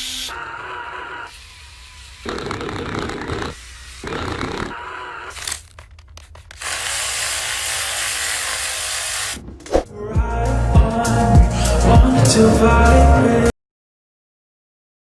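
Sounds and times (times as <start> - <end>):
scraping and tearing: 1.4 - 9.4
music: 9.8 - 13.5.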